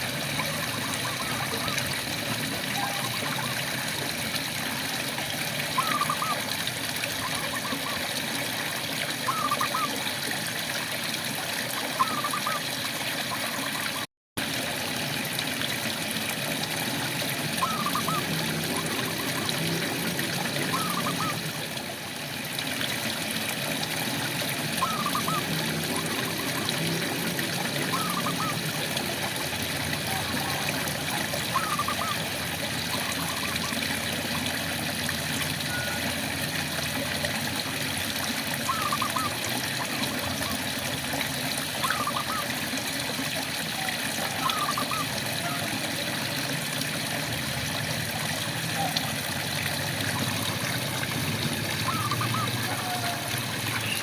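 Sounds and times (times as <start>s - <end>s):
frog calling: 0.4s - 1.8s, 5.8s - 6.5s, 9.3s - 10.0s, 11.9s - 14.0s, 17.6s - 19.8s, 20.5s - 21.4s, 24.8s - 27.0s, 27.7s - 28.7s, 30.1s - 32.3s, 38.7s - 40.6s, 41.8s - 42.5s, 43.8s - 45.7s, 51.8s - 54.0s.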